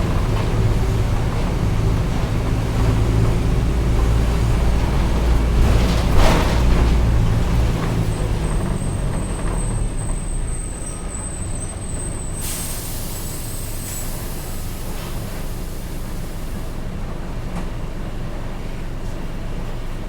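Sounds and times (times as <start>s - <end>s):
bus diesel engine running: 0.0s - 20.0s
air brakes hissing: 8.9s - 16.9s.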